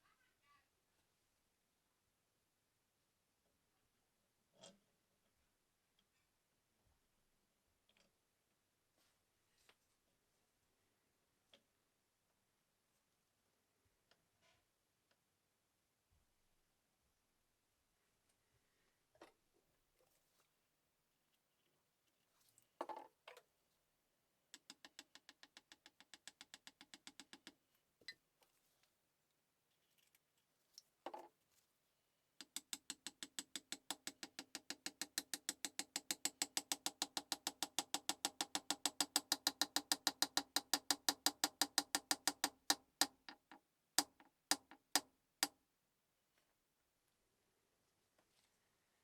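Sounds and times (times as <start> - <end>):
sewing machine clicking: 32.4 - 45.0.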